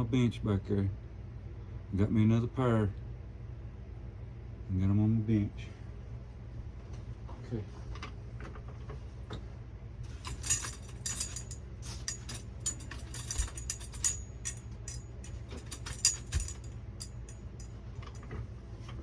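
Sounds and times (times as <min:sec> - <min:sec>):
steady low hum: 0:00.0 - 0:19.0
small metal objects clinking: 0:10.1 - 0:18.2.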